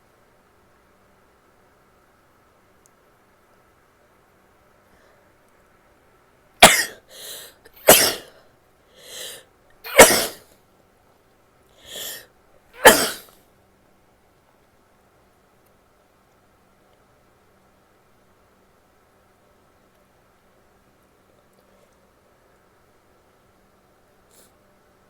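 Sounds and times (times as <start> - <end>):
woman sneezing: 6.6 - 8.3, 9.1 - 10.4, 11.9 - 12.2, 12.8 - 13.3
quick breath in: 7.1 - 9.4, 11.8 - 12.3.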